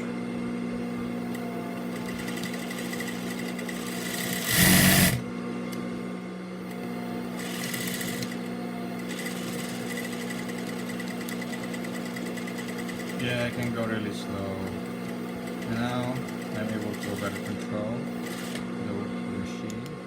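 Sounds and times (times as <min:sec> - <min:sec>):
sewing machine motor humming: 0:00.8 - 0:05.3, 0:06.6 - 0:19.8
sewing machine stitching: 0:01.3 - 0:05.2, 0:07.4 - 0:08.4, 0:09.0 - 0:18.7.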